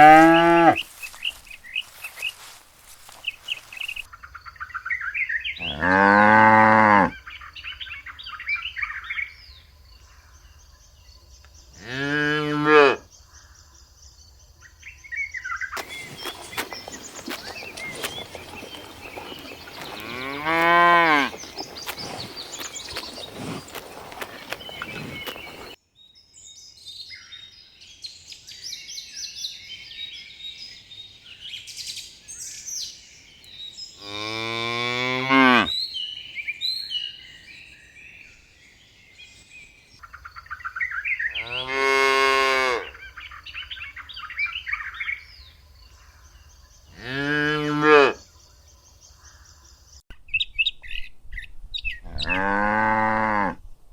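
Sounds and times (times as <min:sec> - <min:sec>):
cows mooing: 0:00.0 - 0:01.0, 0:05.6 - 0:07.1, 0:15.8 - 0:25.8, 0:34.0 - 0:35.7
birds chirping: 0:00.0 - 0:10.4, 0:15.7 - 0:25.8.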